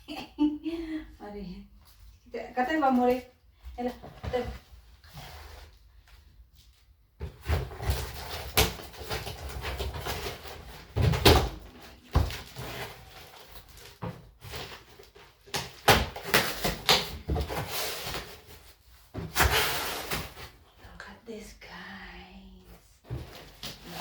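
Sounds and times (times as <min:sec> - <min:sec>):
cardboard box rustling: 0:07.2 - 0:15.5.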